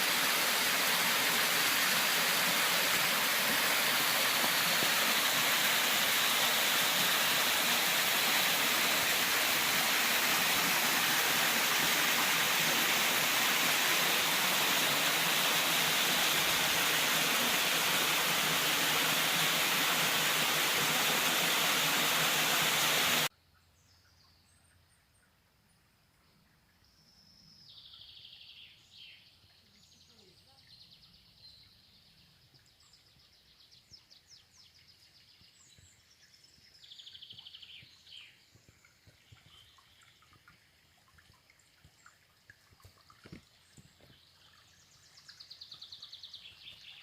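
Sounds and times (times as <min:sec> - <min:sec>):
waterfall rushing: 0:00.0 - 0:23.3.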